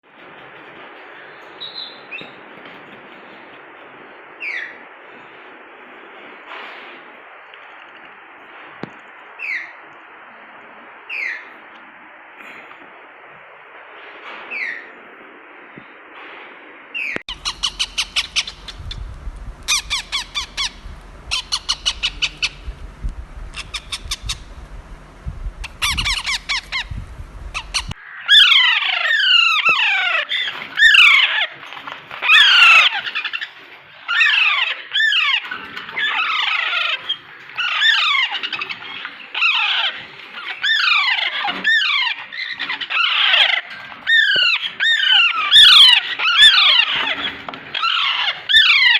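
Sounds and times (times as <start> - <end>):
birds squawking: 17.0 - 48.9
low hum: 17.3 - 28.0.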